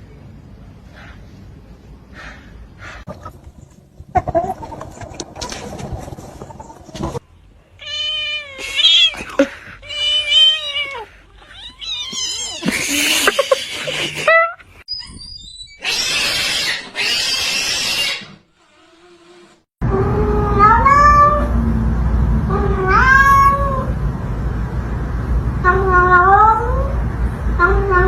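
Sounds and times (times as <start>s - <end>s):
cat yowling: 22.5s - 23.9s.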